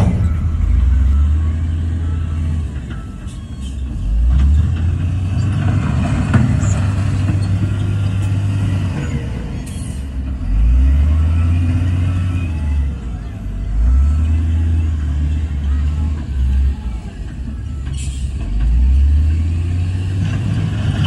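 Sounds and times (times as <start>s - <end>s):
machinery knocks and clanks: 0.0s - 1.2s, 2.7s - 10.4s
heavy diesel engine rumbling: 0.0s - 21.0s.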